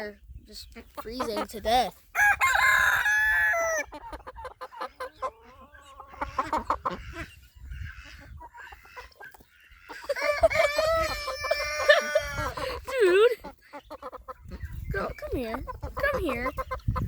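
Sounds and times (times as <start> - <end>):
chickens clucking: 0.0 - 17.0
chicken drawn-out call: 2.2 - 12.8.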